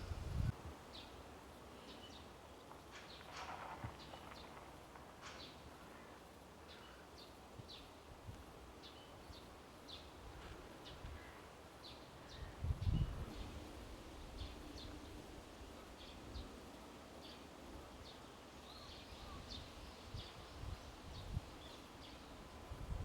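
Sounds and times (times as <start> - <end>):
wind rustling trees: 0.0 - 23.0
faint bird chirps: 18.1 - 22.5.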